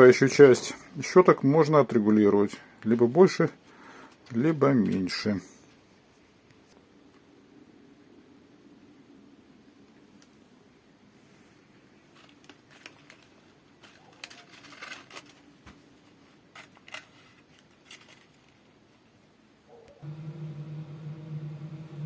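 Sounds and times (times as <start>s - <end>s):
clicks and rustles of handling: 2.1s - 3.5s, 4.1s - 7.3s, 12.0s - 18.8s
steady pitched whine: 20.0s - 22.0s.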